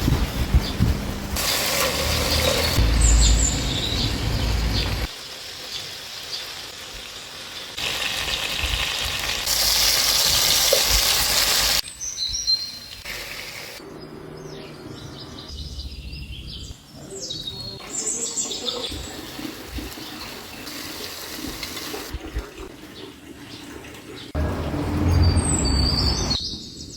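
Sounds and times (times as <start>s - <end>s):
birds chirping: 1.8s - 6.5s, 13.7s - 20.8s, 22.8s - 26.9s
food sizzling in a pan: 5.0s - 11.8s.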